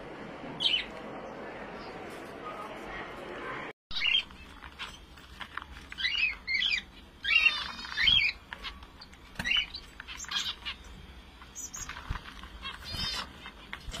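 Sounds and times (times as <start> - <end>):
finches chirping: 3.9 - 5.0, 5.9 - 14.0.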